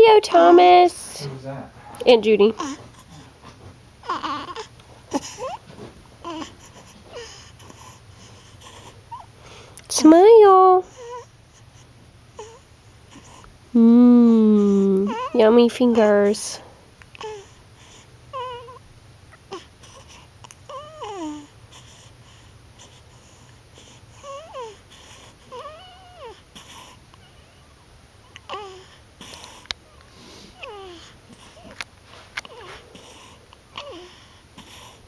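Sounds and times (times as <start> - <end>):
baby cooing and squealing: 4.1 - 5.6, 14.6 - 15.3.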